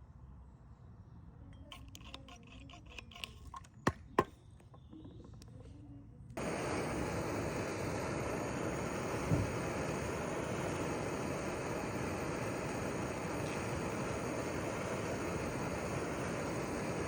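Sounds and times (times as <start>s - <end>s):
steady hiss: 6.4s - 17.0s.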